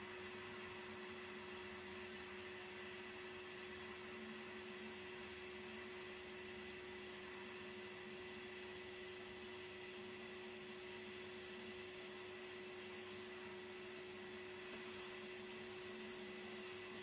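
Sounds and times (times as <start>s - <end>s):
gas torch hissing: 10.4s - 17.0s.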